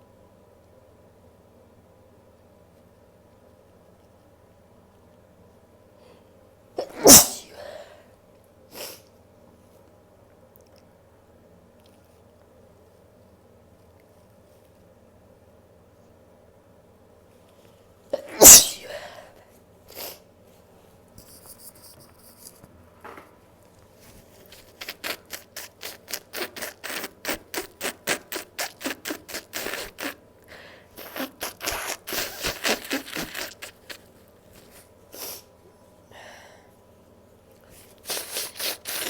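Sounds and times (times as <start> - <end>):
quick short noises: 6.8 - 7.5, 31.0 - 34.0
woman sneezing: 6.8 - 7.9, 18.2 - 19.4, 31.0 - 34.0.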